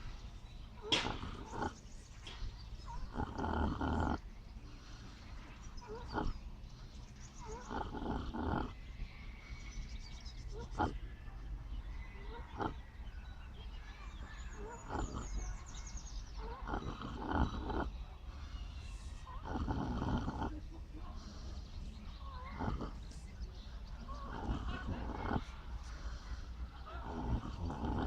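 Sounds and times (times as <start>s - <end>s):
pig snoring: 0.8s - 2.4s, 3.0s - 9.5s, 10.5s - 11.1s, 12.3s - 12.8s, 14.5s - 21.6s, 22.2s - 28.0s.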